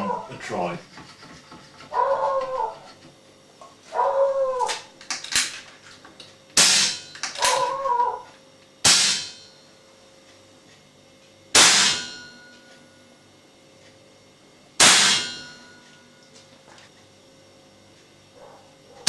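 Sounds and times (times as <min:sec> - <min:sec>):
silenced air rifle shots: 0:11.6 - 0:12.1, 0:14.8 - 0:15.4.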